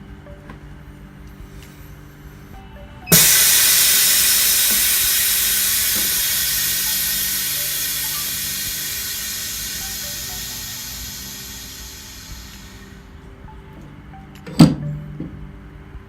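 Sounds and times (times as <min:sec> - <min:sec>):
compressed air hissing: 0:03.1 - 0:13.1.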